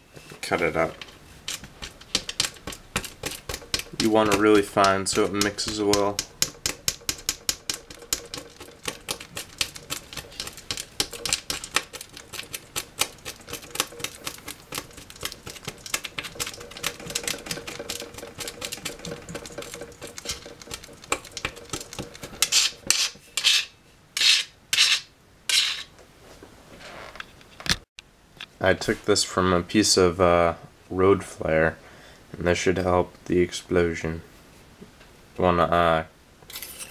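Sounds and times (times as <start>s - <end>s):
razor blade scraping: 22.4s - 25.9s, 36.5s - 36.9s.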